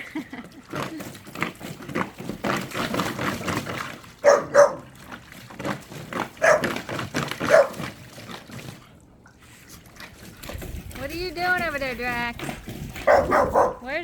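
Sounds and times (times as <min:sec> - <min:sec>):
dog barking: 0:04.2 - 0:04.9, 0:06.4 - 0:06.8, 0:07.4 - 0:07.8, 0:13.0 - 0:13.9.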